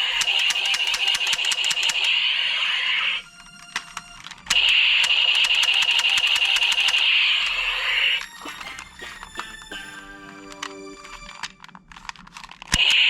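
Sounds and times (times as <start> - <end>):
toy gun electronic firing rattle: 0.0 - 8.2, 11.4 - 13.0.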